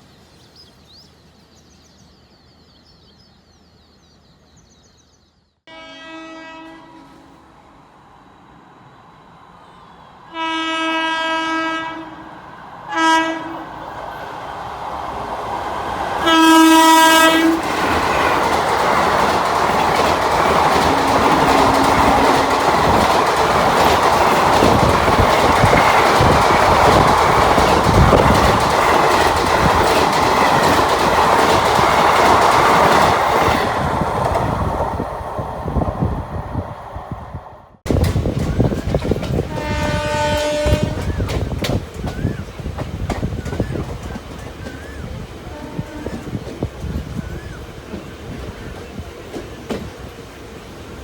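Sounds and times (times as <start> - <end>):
train horn blasts: 5.7 - 8.0, 10.2 - 13.8, 16.2 - 17.7, 20.8 - 22.7, 39.4 - 41.3, 45.4 - 46.4
train wheels clattering over rails: 15.1 - 35.2, 37.9 - 50.4.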